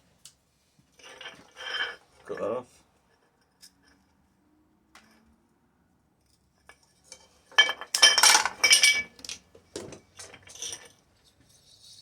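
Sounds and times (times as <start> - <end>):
metal parts clinking and rattling: 7.6 - 10.9.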